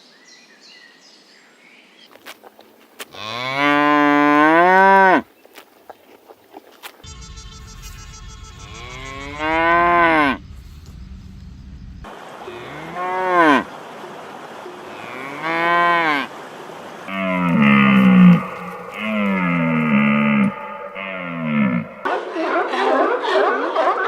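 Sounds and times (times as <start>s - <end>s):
cow mooing: 3.2s - 5.2s, 8.6s - 10.4s, 17.1s - 22.1s
loud animal call: 17.1s - 22.1s.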